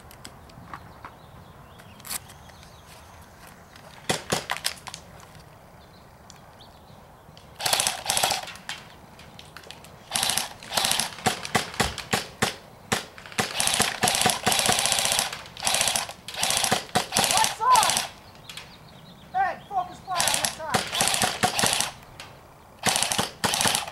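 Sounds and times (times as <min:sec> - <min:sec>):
airsoft guns firing bursts: 0:04.0 - 0:04.8, 0:07.6 - 0:08.9, 0:10.0 - 0:18.7, 0:19.7 - 0:23.9
airsoft gun single shots: 0:20.2 - 0:23.9.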